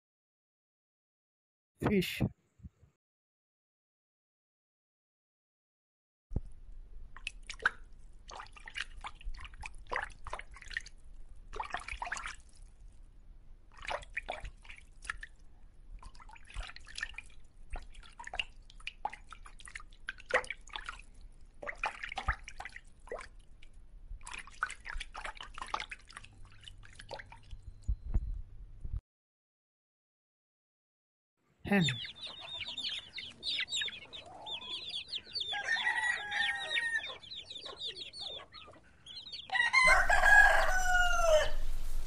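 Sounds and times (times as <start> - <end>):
water dripping and splashing: 7.1 - 13.1, 13.7 - 27.7.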